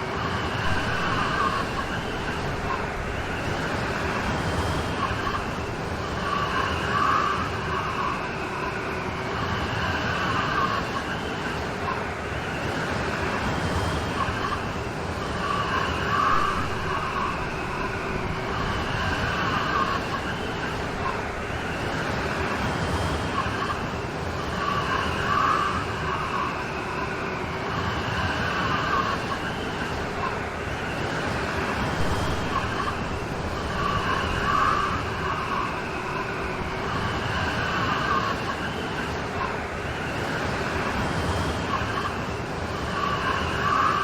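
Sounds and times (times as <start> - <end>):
wavering background tone: 0.2 - 4.0.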